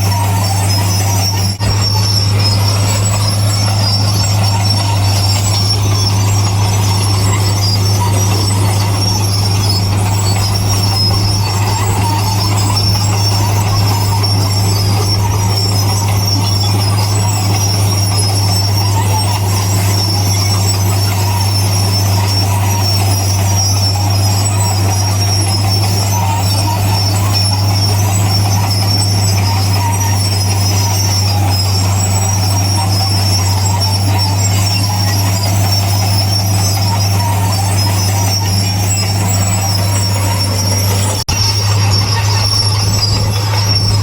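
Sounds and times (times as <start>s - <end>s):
bulldozer diesel engine droning: 0.0s - 44.0s
high metallic whine: 0.0s - 44.0s.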